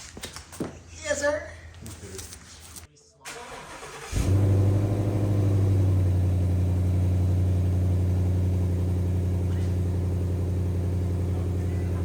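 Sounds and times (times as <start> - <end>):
car engine idling: 3.5 - 12.0.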